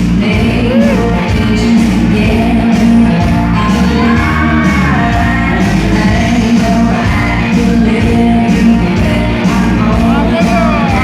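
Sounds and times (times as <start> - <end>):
loud music with steady beat: 0.1 - 11.0
person singing: 0.2 - 2.8, 9.8 - 11.0.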